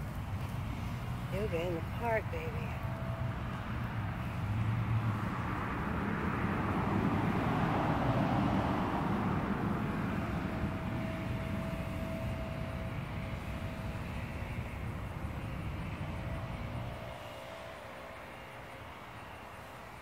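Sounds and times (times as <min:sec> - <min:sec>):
faint steady whine: 0:00.0 - 0:20.0
vehicle passing by: 0:00.0 - 0:20.0.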